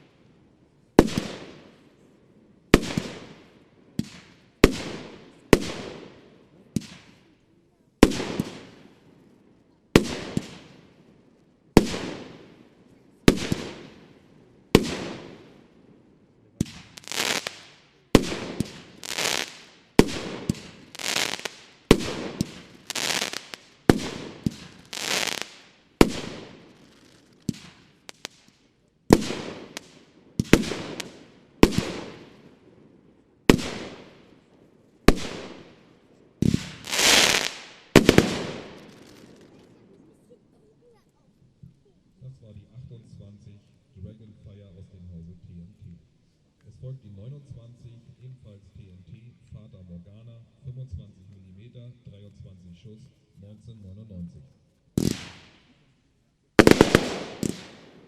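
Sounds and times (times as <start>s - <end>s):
firework hiss: 16.7s - 28.6s, 36.4s - 39.6s
firework battery bangs: 56.6s - 58.0s.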